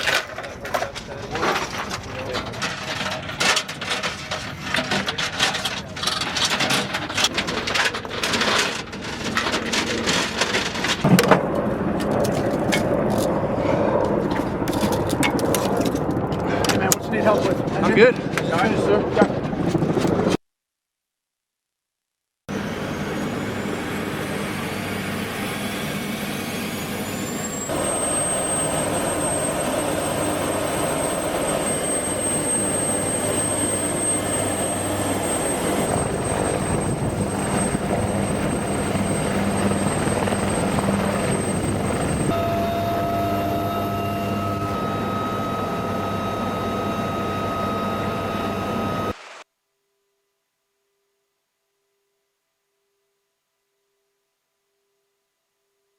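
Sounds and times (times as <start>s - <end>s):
helicopter rotor noise: 10.8s - 20.3s, 22.5s - 49.2s
helicopter turbine whine: 11.2s - 20.2s, 22.5s - 49.2s.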